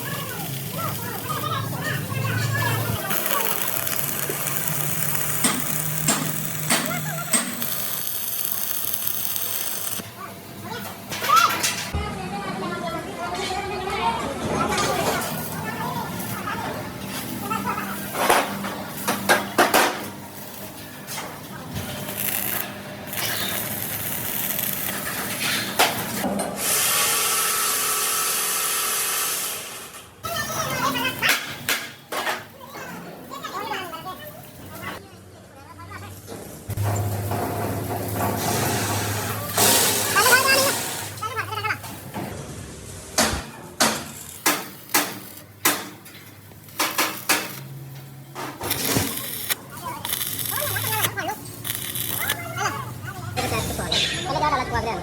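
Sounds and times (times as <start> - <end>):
hammer striking steel: 5.2 - 8.4, 43.2 - 46.2.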